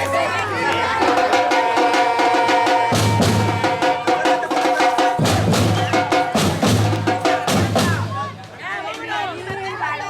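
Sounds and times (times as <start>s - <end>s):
music with quick percussion beat: 0.8s - 8.5s.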